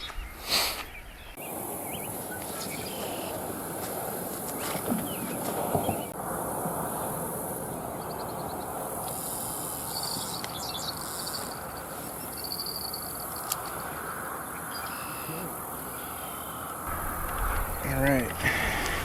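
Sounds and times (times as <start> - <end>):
birds chirping and trilling: 0.0 - 6.2, 9.6 - 19.0
high insect buzz: 6.4 - 19.0
low rushing background: 16.8 - 19.0.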